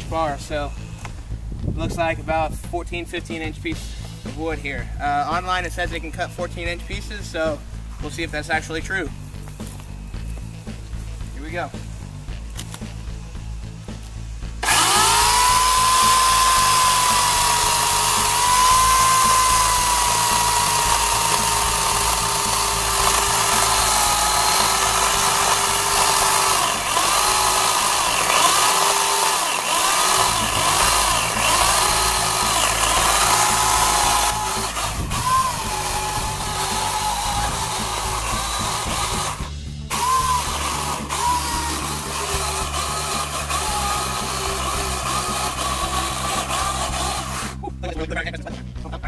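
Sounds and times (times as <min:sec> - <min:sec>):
electric chainsaw cutting log: 0:14.0 - 0:47.7.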